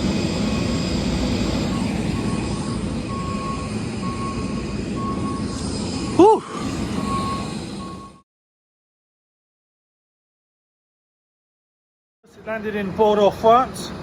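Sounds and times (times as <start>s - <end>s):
engine drone: 0.0s - 8.2s
high electronic beep: 1.7s - 8.2s
person shouting woo: 6.2s - 6.5s.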